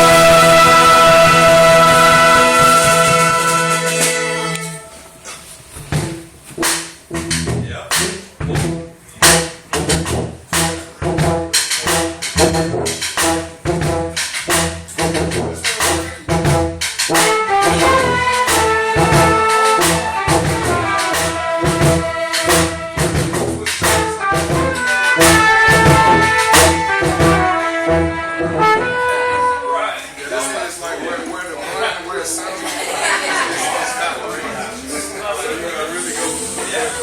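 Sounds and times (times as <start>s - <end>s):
drum hits: 0.0s - 4.8s, 5.9s - 29.3s
horns playing held notes: 0.0s - 5.1s, 6.6s - 30.0s.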